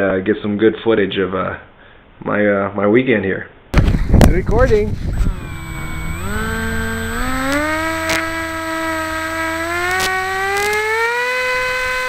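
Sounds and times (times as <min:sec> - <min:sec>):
model plane electric motor whining: 0:03.8 - 0:12.0.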